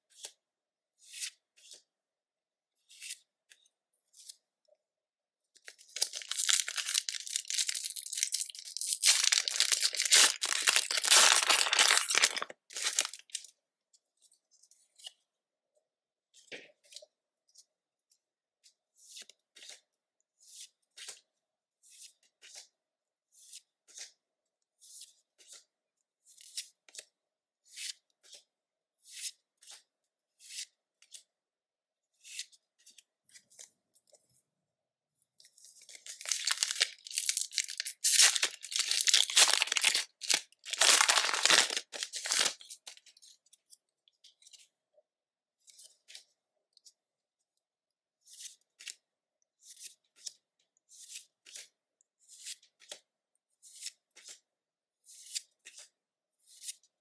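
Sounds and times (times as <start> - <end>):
wrapper tearing and crinkling: 5.9 - 13.5, 36.0 - 42.8
papery rustles: 6.0 - 13.4, 36.1 - 43.0.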